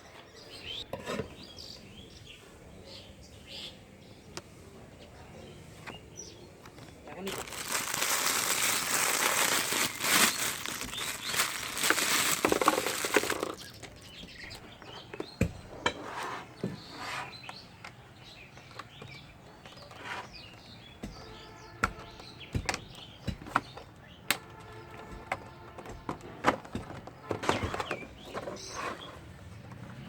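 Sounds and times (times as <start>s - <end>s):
plastic packaging crinkling: 7.2s - 14.1s
clicks and taps of hard plastic: 20.6s - 27.8s.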